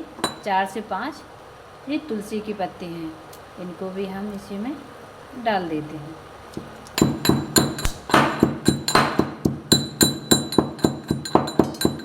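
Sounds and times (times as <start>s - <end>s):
pestle pounding in a mortar: 7.0s - 12.0s.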